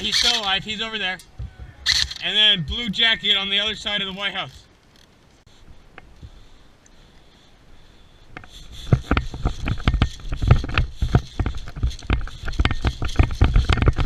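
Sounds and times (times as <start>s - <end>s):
gear rattling against microphone: 0.0s - 5.4s, 8.4s - 14.0s.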